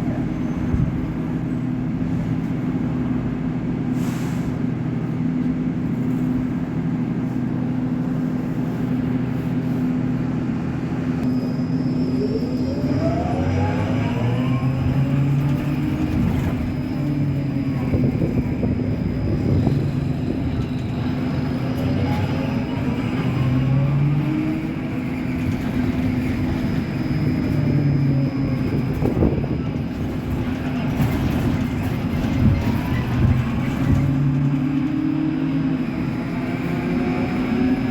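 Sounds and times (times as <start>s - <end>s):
trolleybus motor whine: 0.0s - 37.9s
bus body rattling and knocking: 15.0s - 36.5s.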